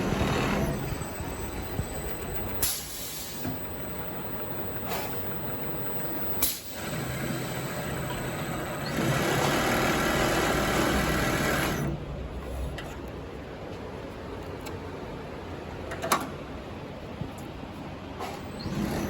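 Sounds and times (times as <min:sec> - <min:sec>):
sewing machine humming: 0:00.0 - 0:11.9.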